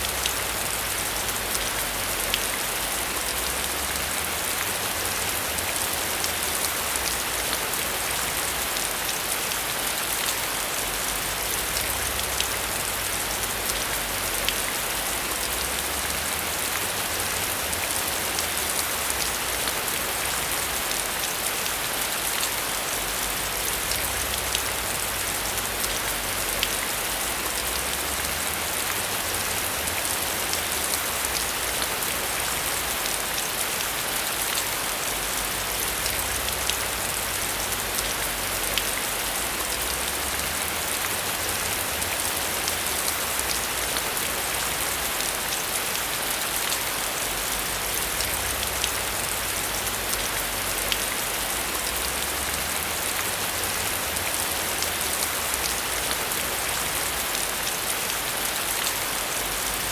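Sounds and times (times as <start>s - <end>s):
heavy rain falling: 0.0s - 59.9s
raindrops ticking on a surface: 0.0s - 59.9s.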